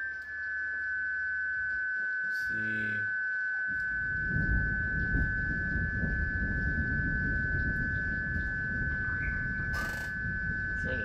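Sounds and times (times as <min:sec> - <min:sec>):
steady high tone: 0:00.0 - 0:11.0
crackling radio static: 0:09.0 - 0:10.2.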